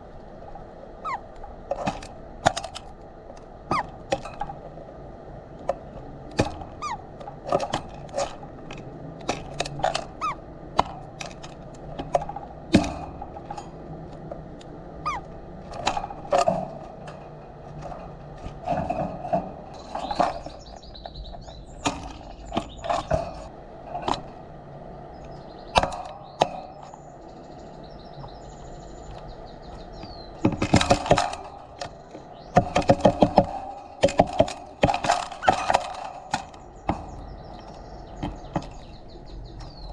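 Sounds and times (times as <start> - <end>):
birds pecking seed tapping: 0.0 - 39.9
faint bird chirps: 1.0 - 1.3, 15.0 - 15.3.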